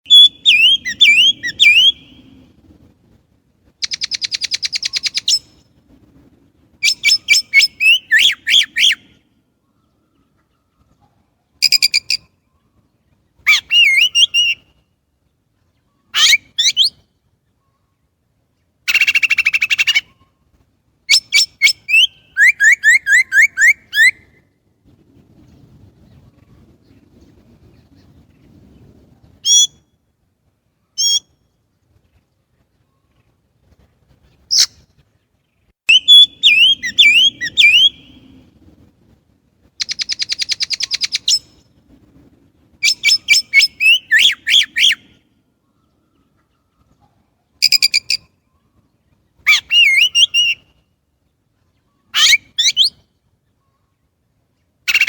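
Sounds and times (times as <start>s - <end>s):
blackbird singing: 0.0s - 2.3s, 3.8s - 5.5s, 6.8s - 9.1s, 13.5s - 14.7s, 15.8s - 17.0s, 21.1s - 24.3s, 35.9s - 38.3s, 39.8s - 41.5s, 42.8s - 45.1s, 49.5s - 50.8s, 51.8s - 53.0s.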